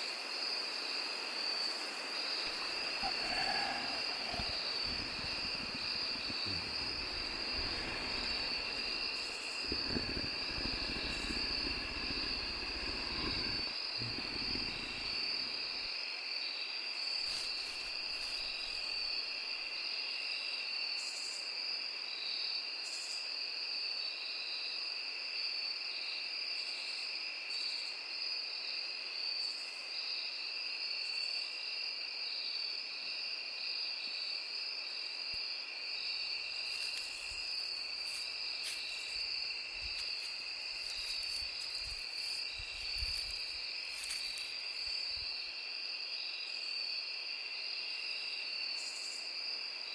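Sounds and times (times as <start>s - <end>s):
crickets chirring: 0.0s - 49.9s
low rumbling: 2.5s - 15.8s.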